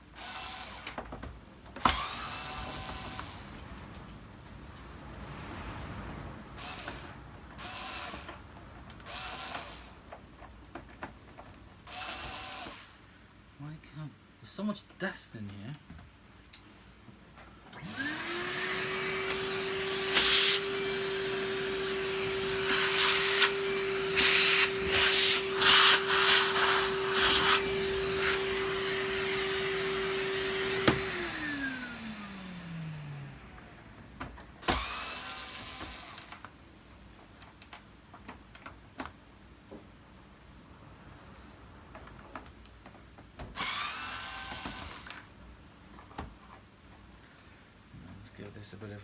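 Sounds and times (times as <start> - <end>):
vacuum cleaner running: 1.8 - 9.9, 17.7 - 36.5, 43.5 - 45.3
rush of air: 2.8 - 9.2.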